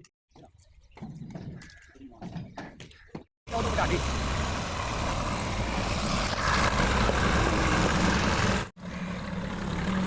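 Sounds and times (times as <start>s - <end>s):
engine rumbling: 3.5s - 10.0s.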